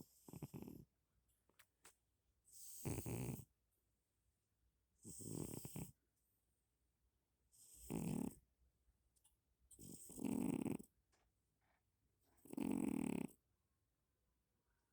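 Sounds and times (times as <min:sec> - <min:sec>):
cat snoring: 0:00.0 - 0:00.9, 0:02.5 - 0:03.5, 0:05.0 - 0:06.0, 0:07.5 - 0:08.4, 0:09.8 - 0:10.9, 0:12.4 - 0:13.4.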